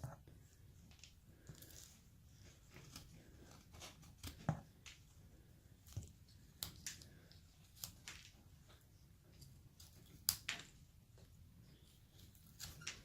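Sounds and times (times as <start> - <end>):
knife cutting and scraping wood: 0.9 - 4.8, 11.7 - 13.0.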